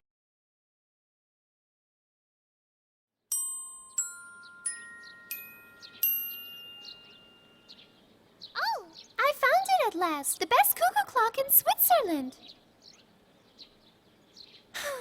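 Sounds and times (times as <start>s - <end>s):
bell-like chime notes: 3.3s - 8.0s
faint bird chirps: 4.4s - 9.4s.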